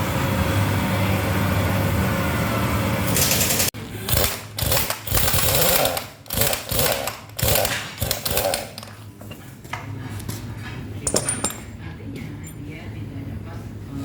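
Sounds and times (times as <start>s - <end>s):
truck engine running: 0.0s - 9.0s.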